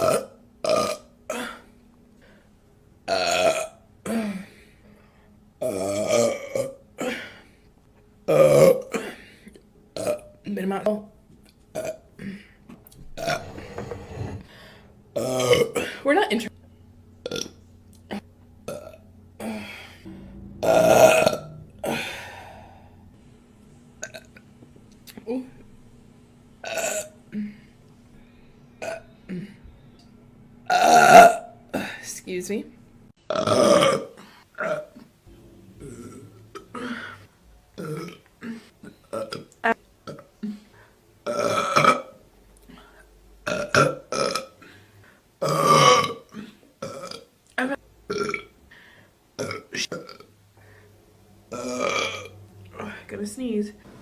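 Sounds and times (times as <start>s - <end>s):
woman burping: 0.0s - 1.7s, 3.1s - 4.5s, 5.6s - 7.4s, 8.3s - 9.2s, 10.0s - 10.3s, 11.8s - 12.5s, 15.2s - 16.1s, 17.2s - 22.8s, 26.6s - 27.7s, 28.8s - 29.6s, 30.7s - 32.0s, 33.3s - 35.1s, 35.8s - 42.2s, 43.5s - 44.6s, 45.4s - 47.3s, 48.1s - 48.5s, 49.4s - 50.3s, 51.5s - 52.3s.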